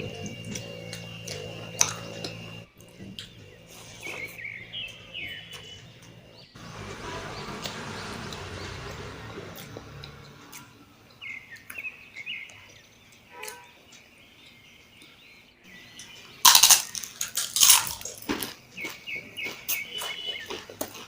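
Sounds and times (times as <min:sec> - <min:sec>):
chewing and smacking food: 0:00.0 - 0:06.2, 0:15.9 - 0:21.0
birds chirping: 0:00.0 - 0:17.1, 0:18.5 - 0:21.0.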